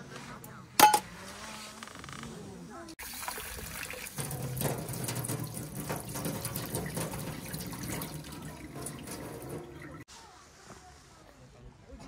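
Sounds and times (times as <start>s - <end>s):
water running and splashing: 3.0s - 10.1s.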